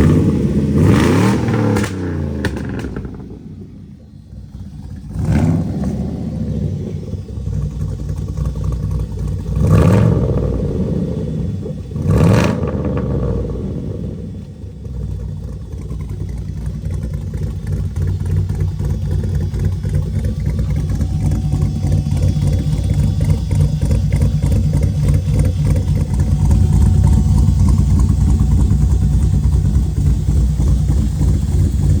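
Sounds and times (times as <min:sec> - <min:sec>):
car engine running: 0:00.0 - 0:32.0.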